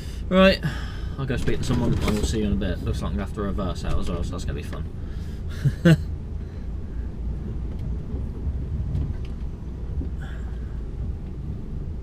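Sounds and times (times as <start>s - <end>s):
diesel engine idling: 0.0s - 1.4s, 4.5s - 12.0s.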